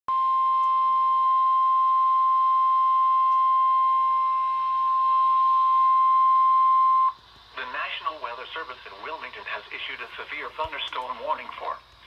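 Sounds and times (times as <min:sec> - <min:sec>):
high-pitched warning tone: 0:00.1 - 0:07.2
faint radio static: 0:03.9 - 0:12.0.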